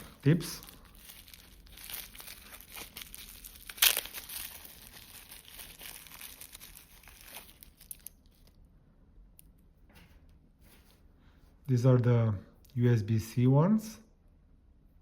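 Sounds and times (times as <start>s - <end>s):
plastic packaging crinkling: 0.0s - 8.6s.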